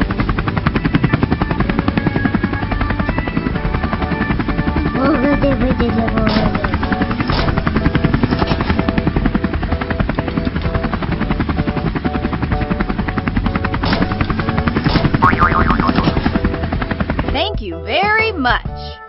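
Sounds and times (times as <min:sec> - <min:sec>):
faint musical tones: 0:00.0 - 0:19.0
cartoon vehicle chopping drone: 0:05.2 - 0:11.1, 0:13.4 - 0:16.6.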